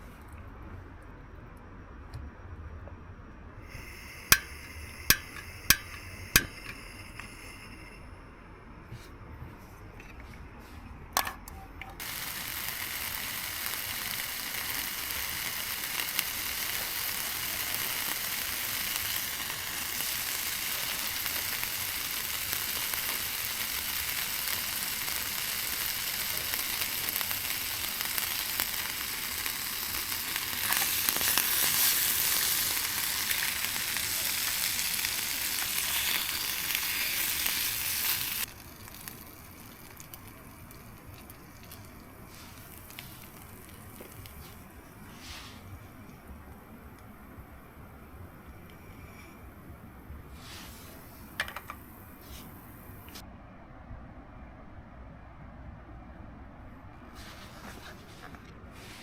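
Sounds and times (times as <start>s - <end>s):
food sizzling in a pan: 3.7s - 8.1s, 12.0s - 46.1s.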